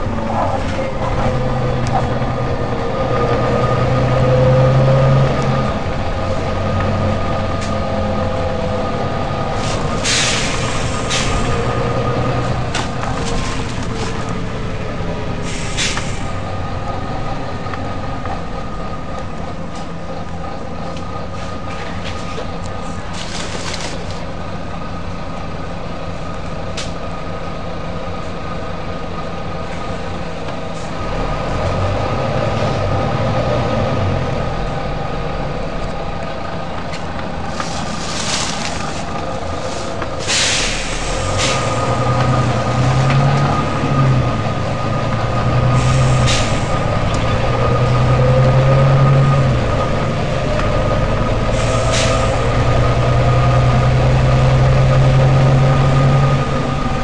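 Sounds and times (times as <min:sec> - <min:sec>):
bus diesel engine running: 0:00.0 - 0:57.0
air brake hisses: 0:09.6 - 0:11.6, 0:15.4 - 0:16.4, 0:39.6 - 0:42.0, 0:45.8 - 0:46.8, 0:51.5 - 0:52.5.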